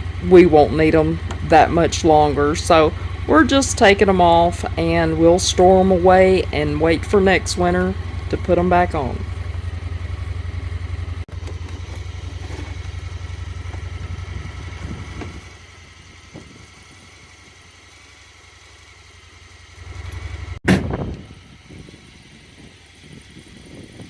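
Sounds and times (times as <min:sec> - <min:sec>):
vehicle engine idling: 0:00.0 - 0:24.0
loud low thud: 0:20.6 - 0:21.3.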